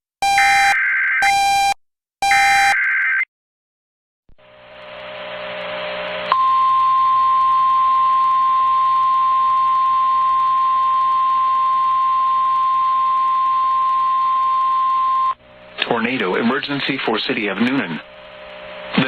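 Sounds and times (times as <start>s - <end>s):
steady high warning tone: 4.4s - 15.4s
radio hiss: 15.8s - 19.0s.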